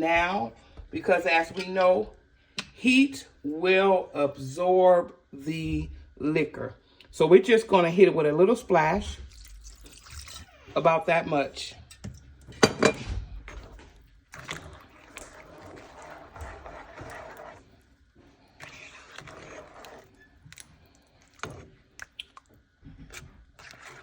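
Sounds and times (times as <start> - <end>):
scraping or stirring in a pan: 9.0 - 24.0.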